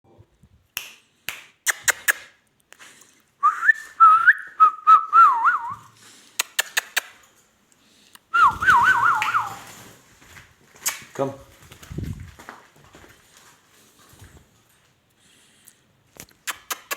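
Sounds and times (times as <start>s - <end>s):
trilling whistled notes: 8.3s - 9.7s.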